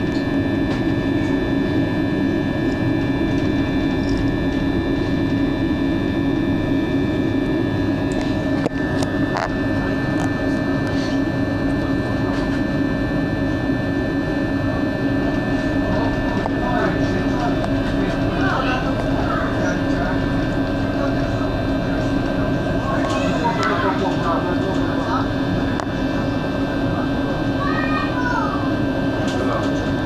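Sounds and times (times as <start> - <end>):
machine droning with whines: 0.0 - 30.0.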